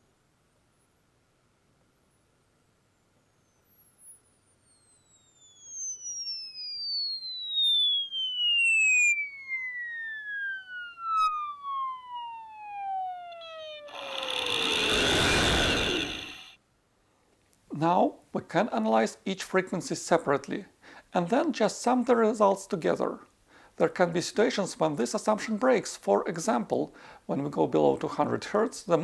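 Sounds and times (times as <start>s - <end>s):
falling sine tone sweep: 4.8s - 16.5s
loud noisy buzz: 13.4s - 16.5s.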